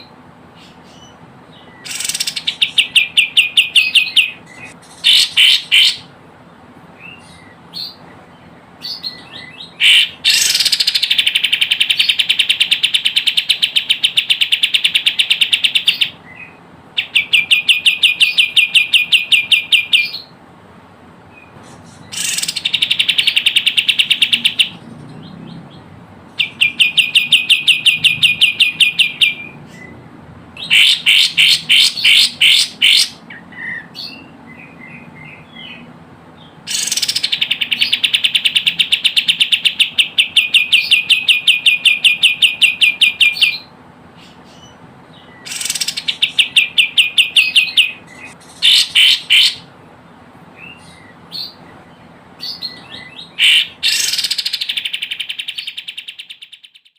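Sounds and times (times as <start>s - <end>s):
bird chattering trills: 0.0s - 6.2s, 7.0s - 20.4s, 21.3s - 49.8s, 50.5s - 56.9s.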